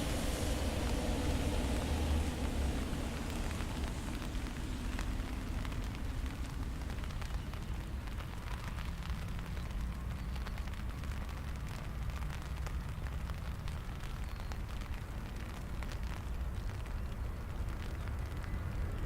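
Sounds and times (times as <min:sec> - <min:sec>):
steady low rumble: 0:00.0 - 0:09.2
rain pattering: 0:00.0 - 0:19.0.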